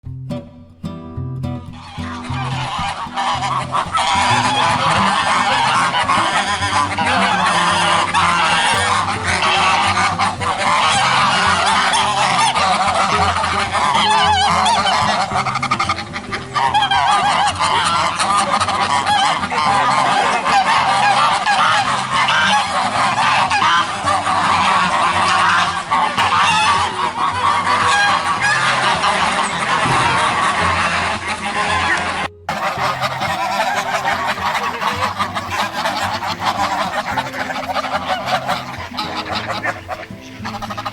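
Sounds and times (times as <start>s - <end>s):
geese honking: 1.4s - 40.9s.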